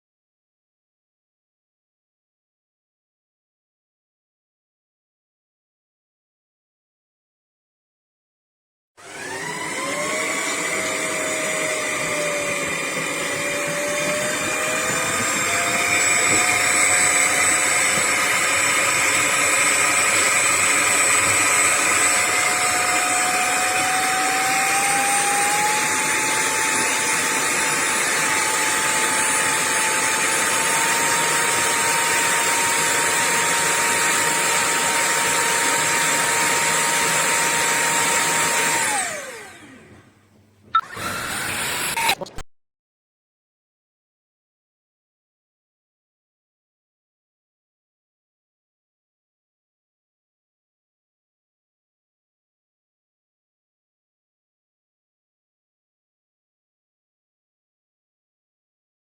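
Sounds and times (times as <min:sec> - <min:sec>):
vacuum motor whining: 0:09.0 - 0:40.1, 0:40.8 - 0:42.4.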